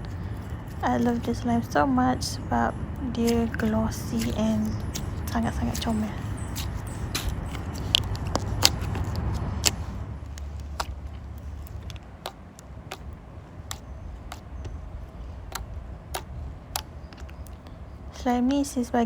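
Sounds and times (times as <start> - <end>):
slime clicking and popping: 9.6 - 14.8, 15.5 - 17.6.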